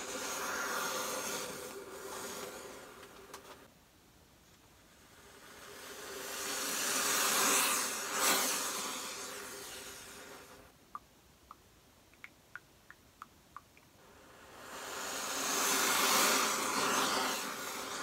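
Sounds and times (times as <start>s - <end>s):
breathy mouth hiss: 4.9s - 10.7s, 14.0s - 18.0s
mouth pops: 10.9s - 14.0s.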